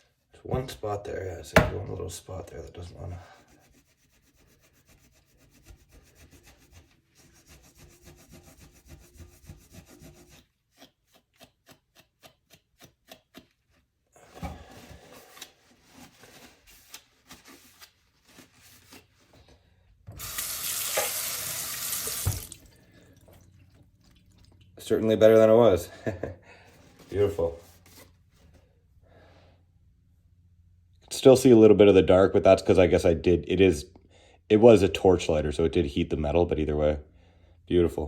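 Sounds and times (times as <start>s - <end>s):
sponge scrubbing a knife blade: 3.2s - 13.5s.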